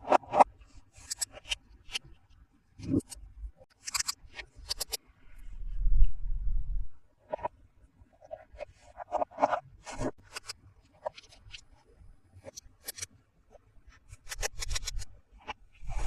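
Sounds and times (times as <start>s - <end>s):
plastic toys clicking and scraping: 0.0s - 2.0s, 2.8s - 5.0s, 9.1s - 11.7s, 12.4s - 13.1s, 14.0s - 15.6s.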